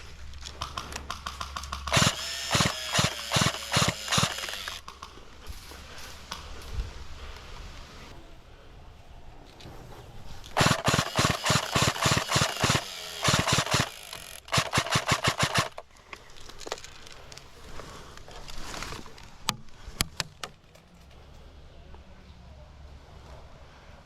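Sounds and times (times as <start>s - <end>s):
airsoft gun shots: 0.7s - 4.8s, 10.6s - 15.8s.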